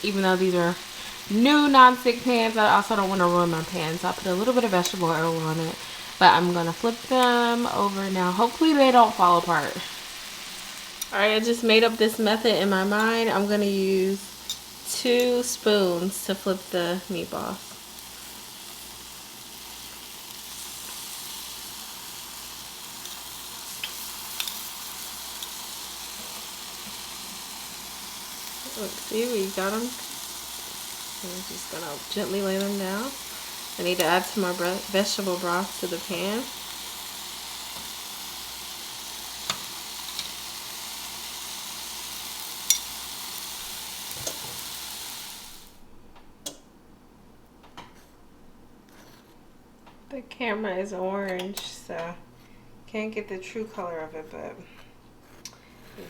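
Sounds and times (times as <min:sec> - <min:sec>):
meatballs sizzling in a frying pan: 0:00.0 - 0:45.8
metal spoons clicking on pan: 0:23.8 - 0:24.7, 0:39.4 - 0:40.4, 0:42.6 - 0:43.0.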